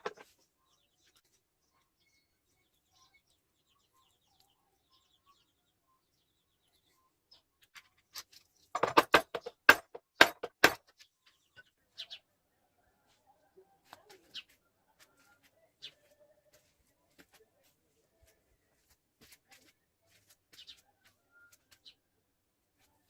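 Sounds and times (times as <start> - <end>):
sharp clicks and knocks: 7.8 - 11.0.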